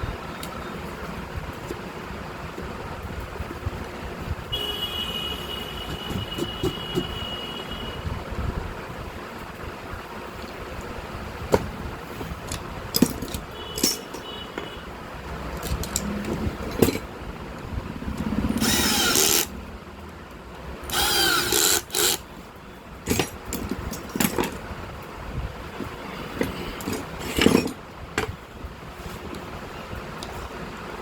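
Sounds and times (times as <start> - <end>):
tools and metal parts clicking: 12.4 - 14.7, 15.5 - 19.6, 20.8 - 22.3, 23.0 - 24.7, 26.3 - 28.4
power tool bursts: 18.5 - 19.5, 20.9 - 22.2.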